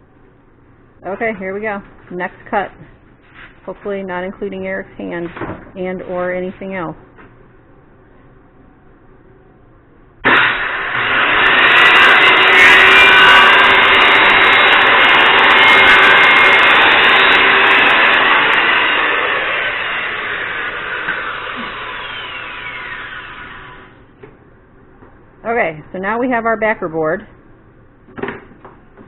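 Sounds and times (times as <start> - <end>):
electric power saw cutting: 10.2 - 24.0.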